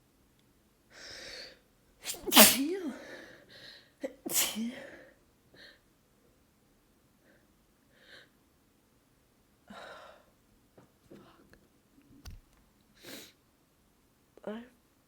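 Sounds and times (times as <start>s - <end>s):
short sniff: 2.0s - 2.8s, 4.3s - 4.6s
person sneezing: 2.0s - 3.2s, 4.0s - 5.0s.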